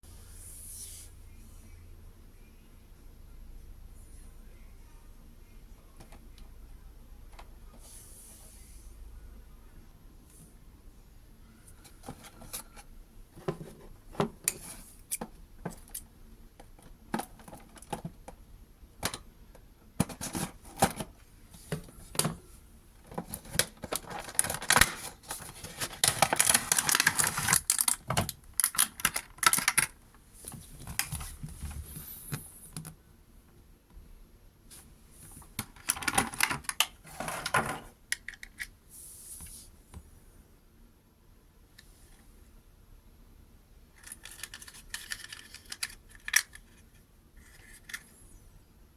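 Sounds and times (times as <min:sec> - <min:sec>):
packaging crinkling and tearing: 0:23.3 - 0:29.9
small plastic parts clicking: 0:44.0 - 0:46.8.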